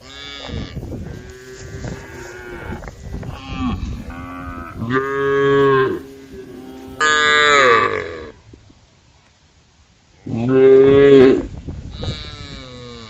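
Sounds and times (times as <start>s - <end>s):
cows mooing: 0.0s - 8.4s.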